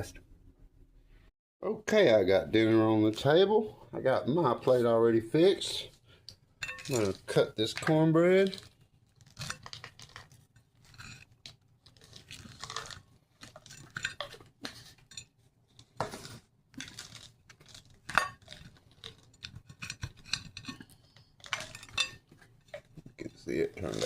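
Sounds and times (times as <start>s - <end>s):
knife crunching through crusty bread: 8.5s - 15.1s, 15.7s - 21.6s.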